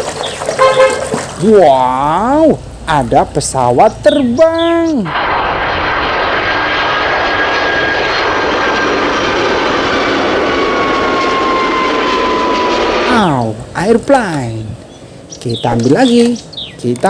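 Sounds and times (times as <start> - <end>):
airplane engine roar: 0.0 - 17.0
faint whine falling in pitch: 1.9 - 14.5.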